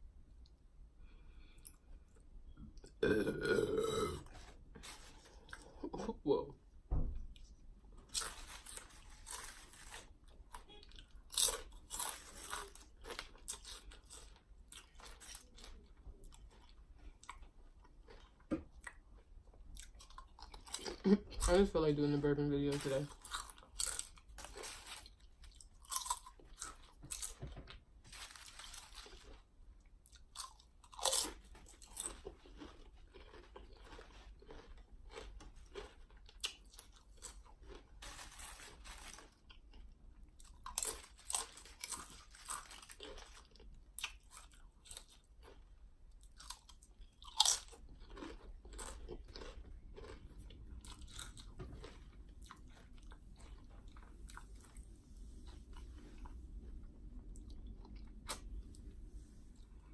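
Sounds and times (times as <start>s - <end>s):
person crunching potato chips: 8.0s - 21.7s, 22.7s - 27.4s, 28.1s - 54.8s.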